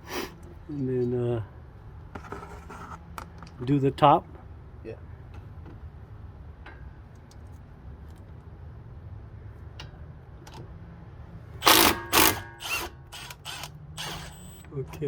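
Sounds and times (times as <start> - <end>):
impact wrench bursts: 11.6 - 14.7.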